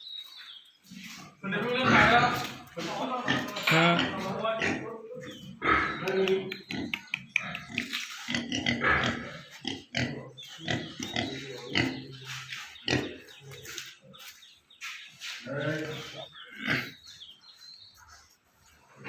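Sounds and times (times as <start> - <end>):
pigs grunting and squealing: 1.3 - 14.1, 15.4 - 17.2.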